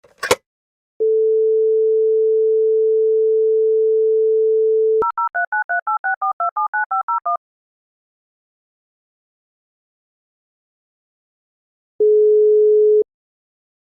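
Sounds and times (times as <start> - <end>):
telephone handset clatter: 0.0 - 0.4
steady dial tone: 1.0 - 7.4, 12.0 - 13.0
touch-tone dialing beeps: 1.0 - 7.4.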